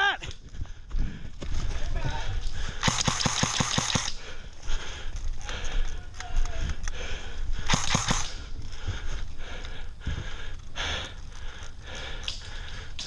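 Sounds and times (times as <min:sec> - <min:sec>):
scattered clicks: 0:02.4 - 0:04.4, 0:05.0 - 0:08.5, 0:10.6 - 0:13.0
airsoft rifle shots: 0:02.8 - 0:04.2, 0:07.7 - 0:08.4.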